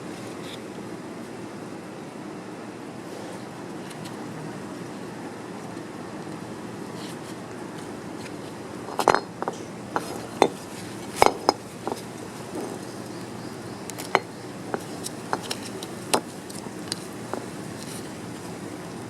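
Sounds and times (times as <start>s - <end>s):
steady low hum: 0.0s - 19.0s
metallic clinks and taps: 8.9s - 10.6s, 11.2s - 12.9s, 13.9s - 16.3s.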